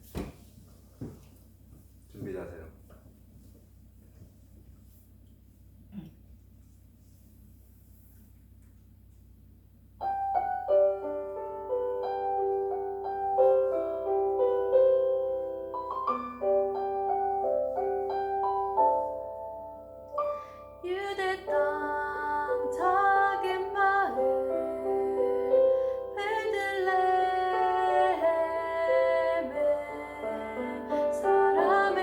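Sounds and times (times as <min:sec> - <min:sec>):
piano playing: 0:09.9 - 0:32.0.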